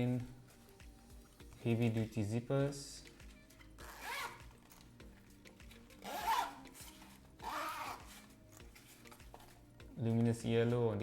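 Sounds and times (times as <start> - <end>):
faint background music: 0.0 - 11.0
zipper being pulled: 3.8 - 4.9, 6.0 - 9.2.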